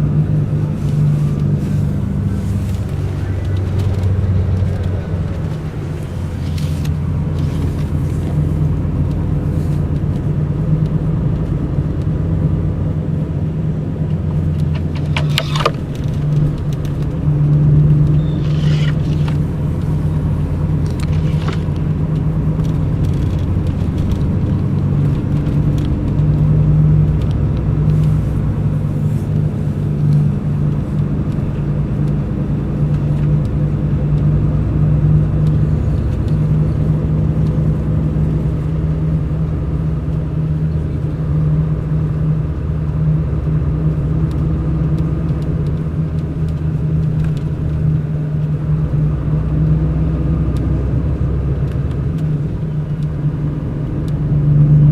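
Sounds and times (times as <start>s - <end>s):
bus diesel engine humming: 0.0s - 54.9s.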